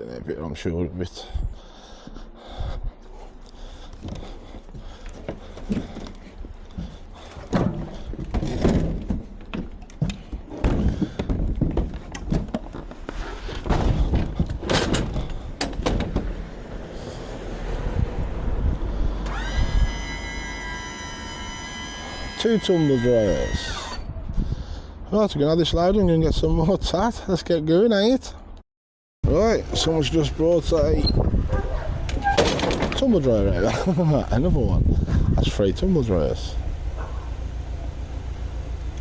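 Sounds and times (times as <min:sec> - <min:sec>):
tumble dryer thunks and bangs: 0:07.5 - 0:09.4, 0:10.6 - 0:12.5, 0:13.6 - 0:16.4.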